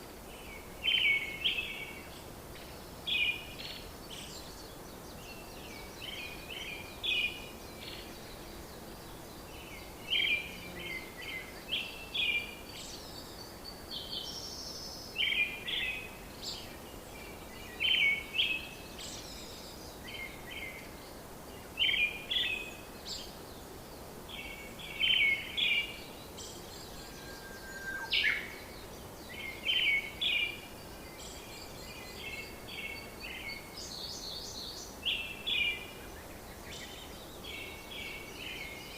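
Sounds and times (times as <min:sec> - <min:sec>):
background hiss: 0:00.0 - 0:38.9
bird chirping: 0:24.1 - 0:38.9.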